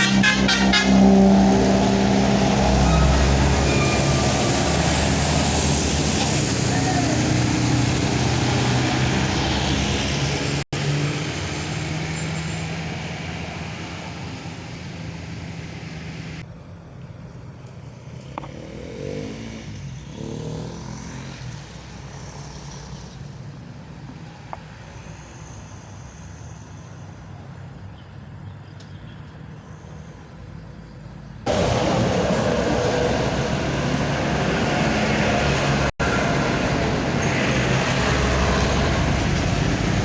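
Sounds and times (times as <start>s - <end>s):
heavy vehicle engine: 0.0s - 17.0s, 31.4s - 40.0s
passing traffic: 0.0s - 40.0s.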